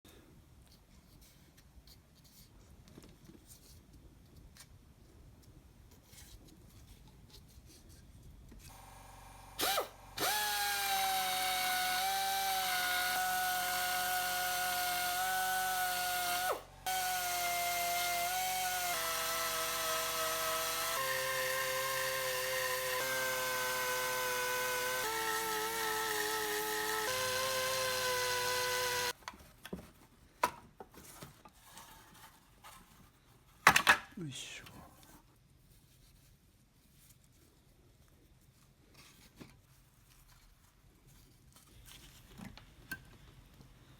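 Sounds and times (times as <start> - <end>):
power drill motor whining: 8.7 - 29.2.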